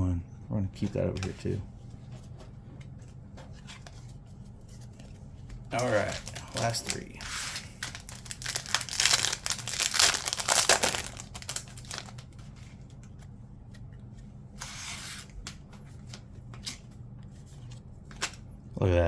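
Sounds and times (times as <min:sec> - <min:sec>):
foil wrapper crinkling: 0:05.7 - 0:13.2
foil wrapper ripping: 0:05.8 - 0:12.3.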